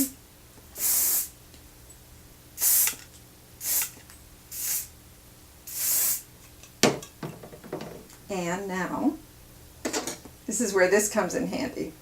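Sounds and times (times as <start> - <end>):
aerosol can spraying: 0.8 - 1.3, 2.6 - 4.9, 5.7 - 6.3.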